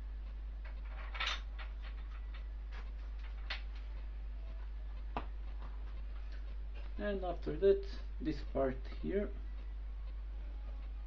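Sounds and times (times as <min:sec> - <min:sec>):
steady low hum: 0:00.0 - 0:11.0
metal parts clicking and clinking: 0:00.6 - 0:03.6.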